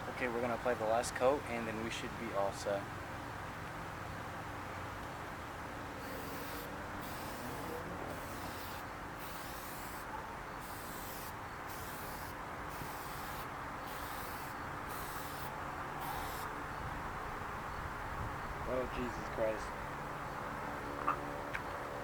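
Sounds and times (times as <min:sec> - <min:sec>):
aerosol spray bursts: 0:06.0 - 0:16.5
wind on microphone: 0:16.0 - 0:19.9.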